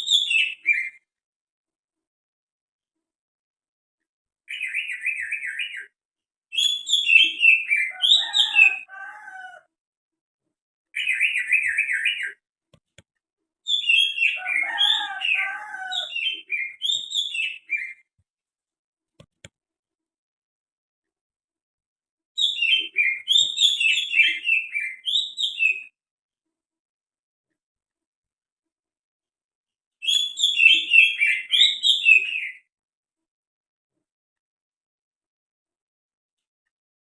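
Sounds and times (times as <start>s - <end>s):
bird singing trills and whistles: 0.0s - 1.0s, 4.5s - 5.9s, 6.5s - 8.9s, 11.0s - 12.4s, 13.7s - 18.0s, 22.4s - 25.9s, 30.0s - 32.7s.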